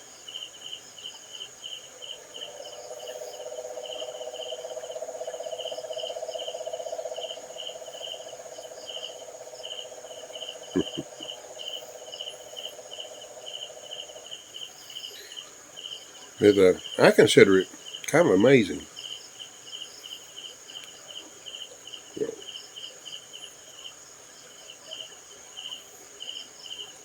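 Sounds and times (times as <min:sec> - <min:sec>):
crickets chirping: 0:00.0 - 0:27.0
high insect hum: 0:00.0 - 0:27.0
long low insect trill: 0:00.0 - 0:27.0.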